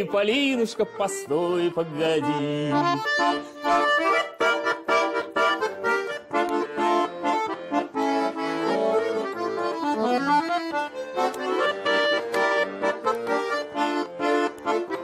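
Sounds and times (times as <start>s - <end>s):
folk-style instrumental music: 0.0s - 15.0s.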